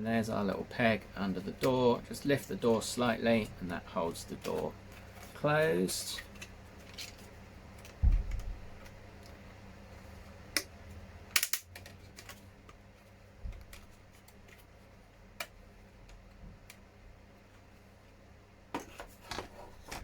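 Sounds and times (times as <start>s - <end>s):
dull low thump: 8.0s - 8.7s
plastic parts clicking: 11.3s - 12.4s.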